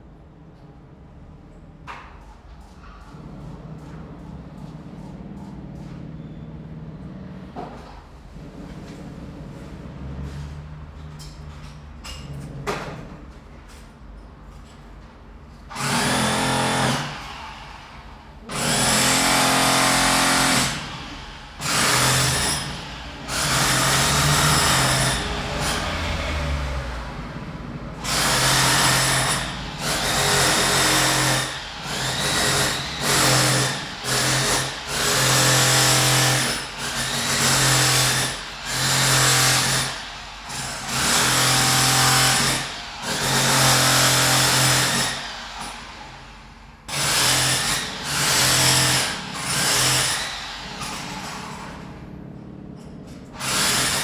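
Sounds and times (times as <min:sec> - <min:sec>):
power drill bursts: 0:15.7 - 0:26.7, 0:28.0 - 0:51.9, 0:53.4 - 0:54.0.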